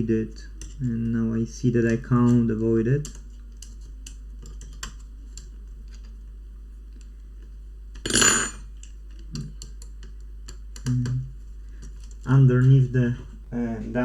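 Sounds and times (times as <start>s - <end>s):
clicks and taps on laptop parts: 3.0s - 6.2s, 8.7s - 12.3s
ringing clatter: 8.1s - 8.7s.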